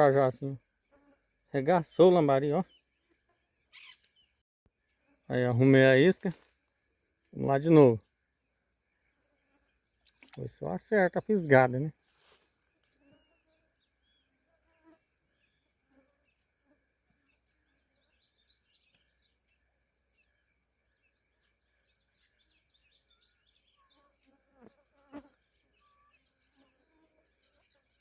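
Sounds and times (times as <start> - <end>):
high-pitched insect chorus: 0.0 - 28.0
soft bird chirps: 0.5 - 5.0, 17.2 - 24.8.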